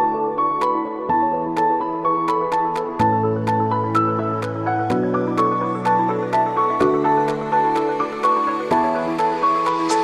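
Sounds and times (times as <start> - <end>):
calm synth music with light beat: 0.0 - 10.0.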